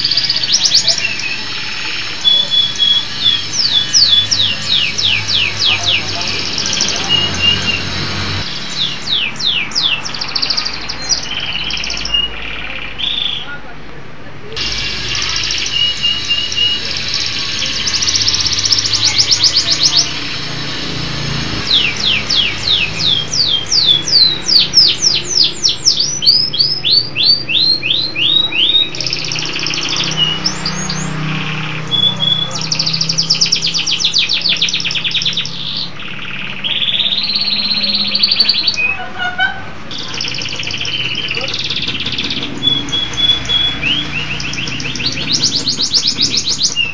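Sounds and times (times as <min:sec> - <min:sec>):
canary singing: 0:00.0 - 0:13.6, 0:14.5 - 0:46.9.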